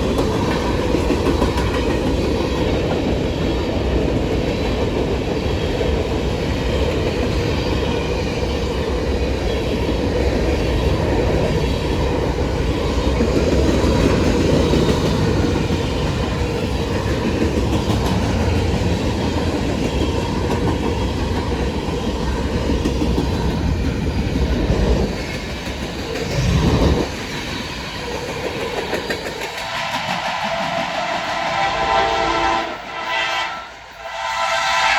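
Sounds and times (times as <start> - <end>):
freight train cars rumbling past: 0.0 - 34.9
locomotive horn: 31.0 - 34.9.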